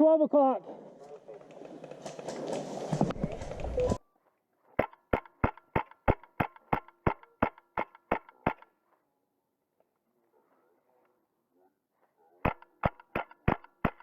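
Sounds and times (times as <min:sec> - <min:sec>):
airsoft rifle shots: 0:04.8 - 0:08.6, 0:12.4 - 0:14.0.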